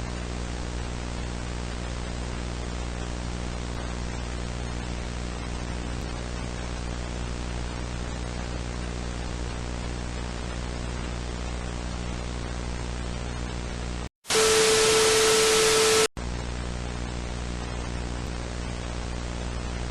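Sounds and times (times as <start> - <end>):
harsh static with steady tone: 0.0 - 19.9
static hiss: 14.3 - 16.1.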